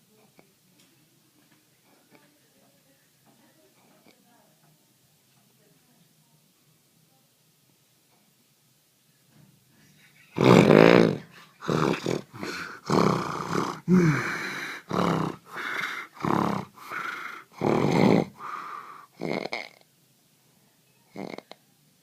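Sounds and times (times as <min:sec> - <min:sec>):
person snoring loudly: 0:10.4 - 0:19.8, 0:21.1 - 0:21.6.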